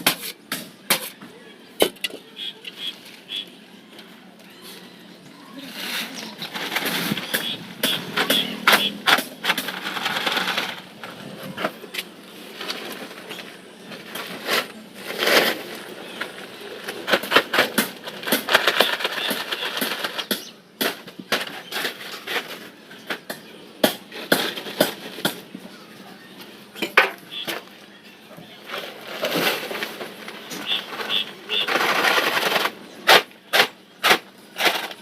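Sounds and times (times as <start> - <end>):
tools scraping mortar: 0.0 - 1.2, 5.7 - 25.4, 28.6 - 35.0.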